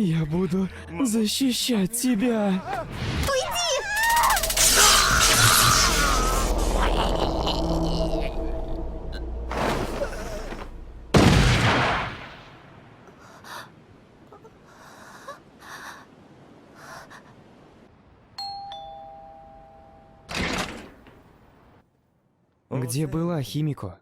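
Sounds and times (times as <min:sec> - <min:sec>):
loud sudden hit: 0:09.1 - 0:12.6.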